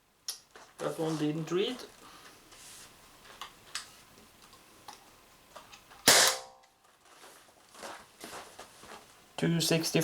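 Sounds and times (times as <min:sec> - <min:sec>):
air pistol shot: 0:06.0 - 0:06.6.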